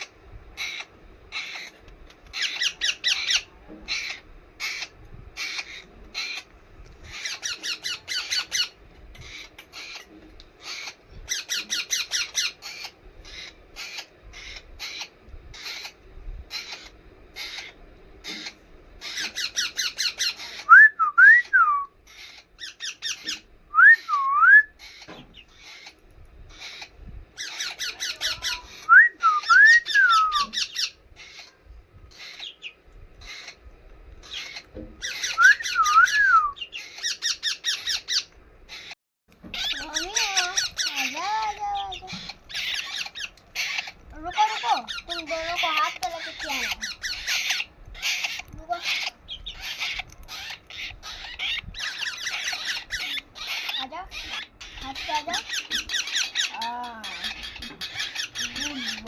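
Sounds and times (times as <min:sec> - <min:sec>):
parrot harsh chattering: 0:00.6 - 0:20.7, 0:24.8 - 0:33.6, 0:34.2 - 0:59.0
parrot whistles: 0:20.6 - 0:21.9, 0:23.7 - 0:24.8, 0:28.8 - 0:30.6, 0:35.1 - 0:36.7.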